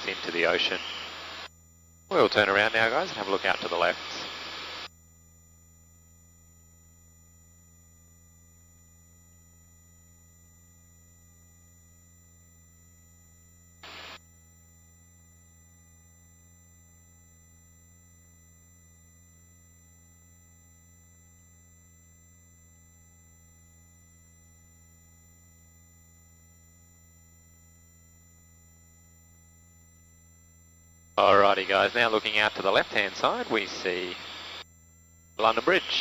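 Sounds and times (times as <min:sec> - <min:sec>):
faint electrical hum: 0:00.0 - 0:08.3, 0:27.4 - 0:36.0
thin constant tones: 0:00.0 - 0:36.0.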